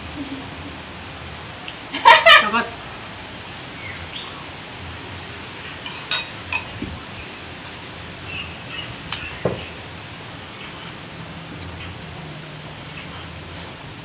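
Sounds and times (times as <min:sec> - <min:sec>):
steady background hiss: 0:00.0 - 0:14.0
spoons clinking against bowls: 0:05.8 - 0:06.8.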